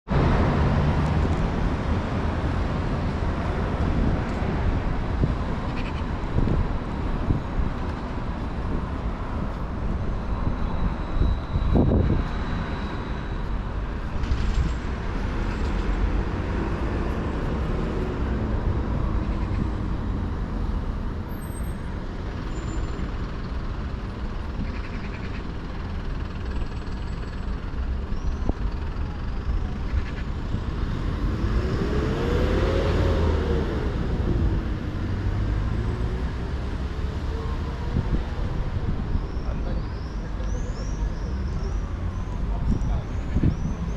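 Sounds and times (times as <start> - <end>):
road traffic rumbling: 0.0 - 43.9
vehicle engine rising and falling: 25.6 - 39.1.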